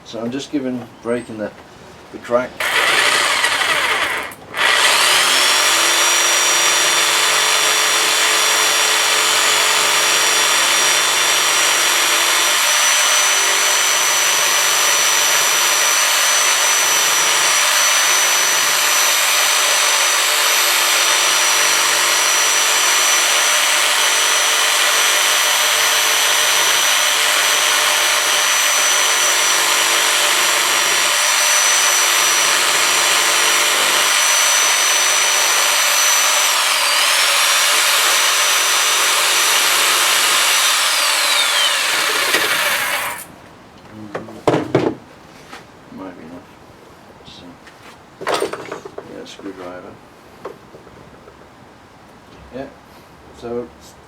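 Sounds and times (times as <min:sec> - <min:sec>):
electric jigsaw cutting plastic: 0:02.6 - 0:43.3.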